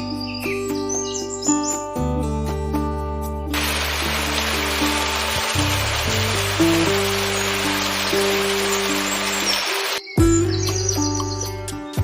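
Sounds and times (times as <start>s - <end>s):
steady hiss: 3.6s - 10.0s.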